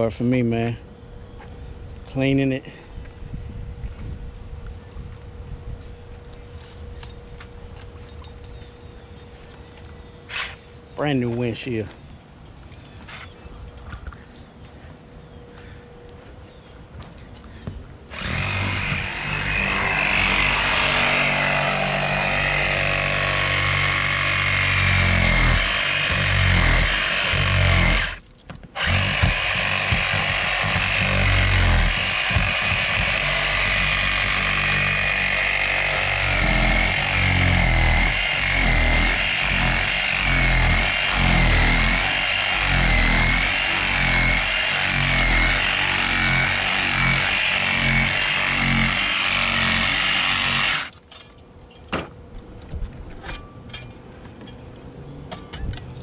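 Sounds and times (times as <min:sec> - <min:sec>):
power tool cutting windshield: 0:18.1 - 0:51.0.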